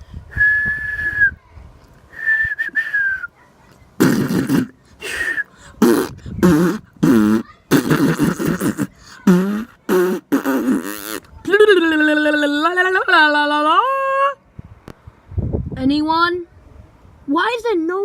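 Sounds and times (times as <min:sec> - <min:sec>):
person whistling held notes: 0:00.4 - 0:01.4, 0:02.1 - 0:03.3
silly vocal noises: 0:04.0 - 0:14.4.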